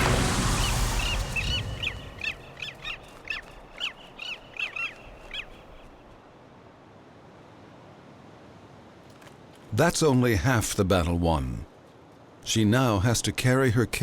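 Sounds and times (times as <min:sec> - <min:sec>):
bird harsh calls: 0:00.4 - 0:06.0.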